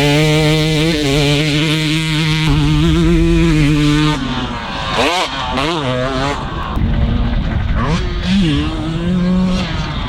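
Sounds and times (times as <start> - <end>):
dirt bike engine running: 0.0 - 10.0.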